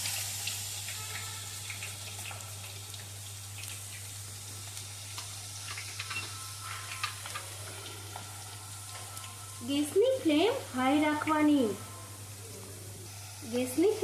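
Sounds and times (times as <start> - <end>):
small crackles: 0.0 - 9.4
potato slices frying in oil: 0.0 - 14.0.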